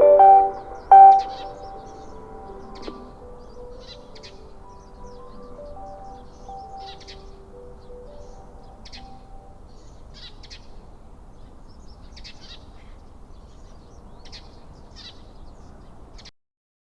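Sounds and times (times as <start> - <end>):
loudspeaker chime: 0.0 - 1.9
birds chirping: 0.0 - 16.3.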